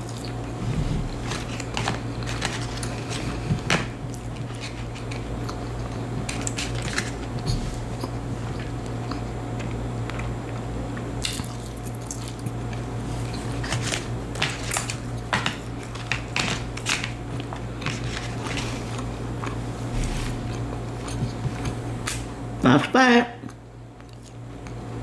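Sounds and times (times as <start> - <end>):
steady low hum: 0.0 - 11.4, 18.4 - 25.0.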